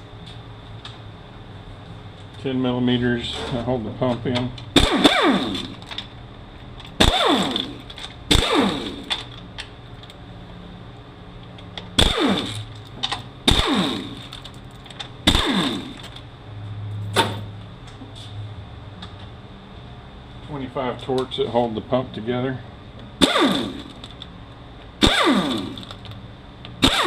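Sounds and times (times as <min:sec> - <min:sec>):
power tool spinning out bolts: 0:13.5 - 0:16.2, 0:25.0 - 0:26.0.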